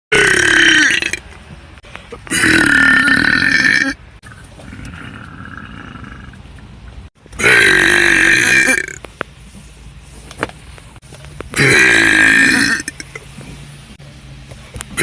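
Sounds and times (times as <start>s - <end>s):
person burping: 0.1s - 1.2s, 2.2s - 4.0s, 7.4s - 9.0s, 11.6s - 13.1s.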